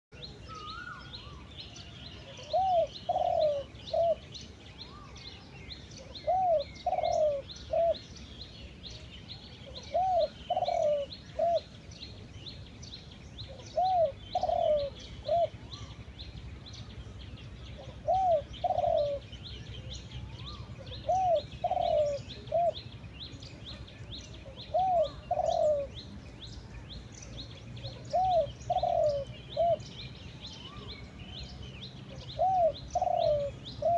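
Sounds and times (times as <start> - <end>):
birds chirping: 0.1 - 33.9
dove cooing: 2.2 - 5.2, 6.0 - 8.1, 9.6 - 11.8, 13.4 - 16.0, 17.6 - 22.8, 24.3 - 26.0, 27.8 - 29.9, 32.0 - 33.9.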